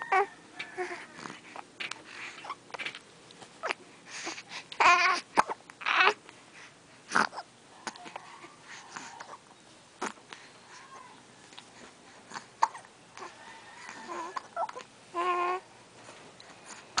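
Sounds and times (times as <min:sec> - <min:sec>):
snuffling and wheezy breaths: 0:00.6 - 0:04.8, 0:06.4 - 0:09.4, 0:16.0 - 0:17.0
short whimpering cries: 0:12.3 - 0:15.6.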